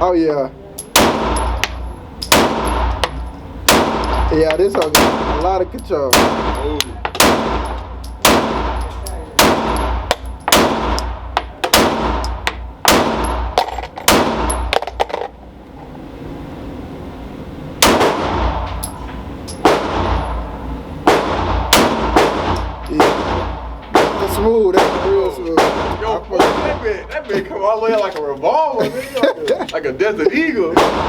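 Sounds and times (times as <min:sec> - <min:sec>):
pistol shots with echo: 0:00.9 - 0:14.8, 0:17.8 - 0:18.7, 0:19.6 - 0:20.5, 0:21.1 - 0:27.0, 0:30.8 - 0:31.0.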